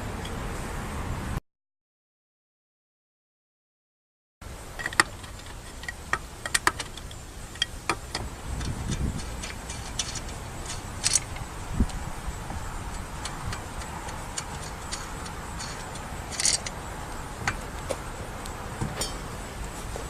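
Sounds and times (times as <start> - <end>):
metallic rattles: 4.7 - 20.0
metal tools clinking: 4.8 - 18.1, 18.8 - 19.8.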